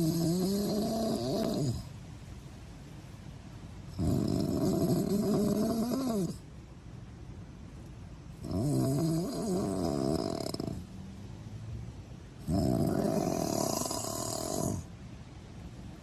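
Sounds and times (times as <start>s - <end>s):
person snoring: 8.4s - 10.8s, 12.5s - 14.8s.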